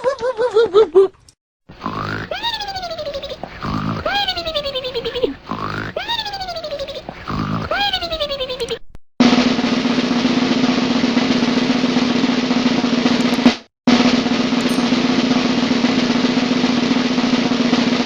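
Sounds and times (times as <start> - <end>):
snare drum roll: 9.2 - 18.0.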